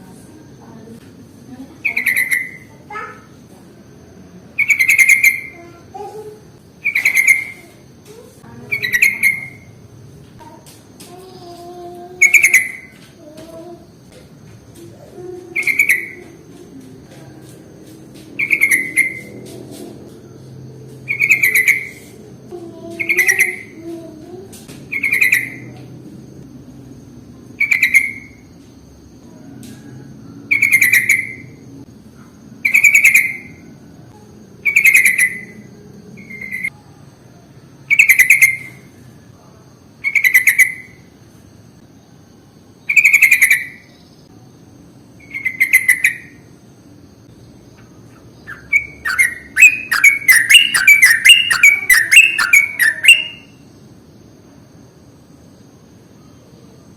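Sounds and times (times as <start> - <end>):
bird chattering call: 1.8 - 3.1, 4.6 - 5.6, 6.8 - 7.7, 8.7 - 9.7, 48.1 - 53.6.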